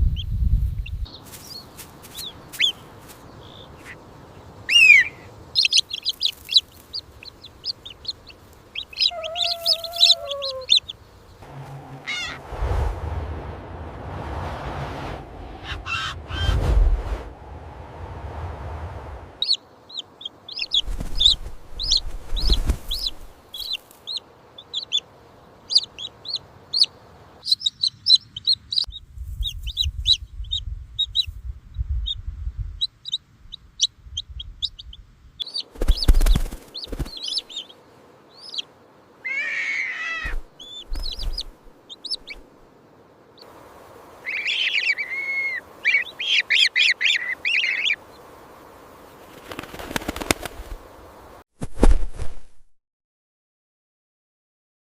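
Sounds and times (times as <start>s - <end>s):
lower bird calls: 0.9s - 12.6s, 15.6s - 16.8s, 19.4s - 25.0s, 33.8s - 42.5s, 44.2s - 48.4s
chicks peeping: 3.4s - 4.0s, 5.6s - 11.0s, 19.4s - 25.0s, 25.6s - 31.3s, 32.8s - 38.7s, 40.2s - 42.4s, 44.3s - 48.0s.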